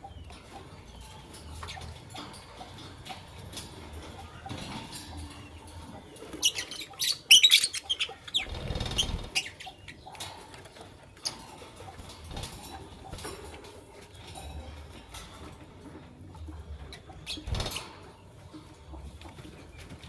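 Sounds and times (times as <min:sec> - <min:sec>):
lovebirds chirping: 0:00.0 - 0:15.4
wings fluttering: 0:01.0 - 0:10.6, 0:17.2 - 0:18.1.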